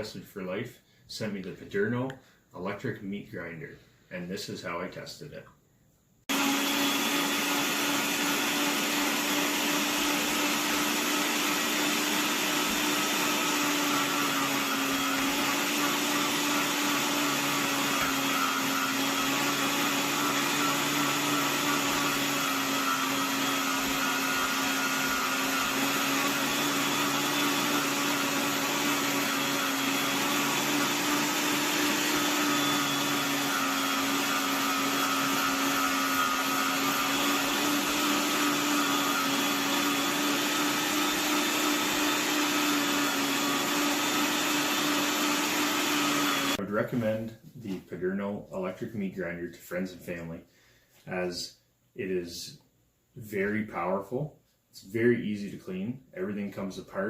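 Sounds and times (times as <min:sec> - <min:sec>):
electric meat grinder whirring: 0:06.3 - 0:46.6.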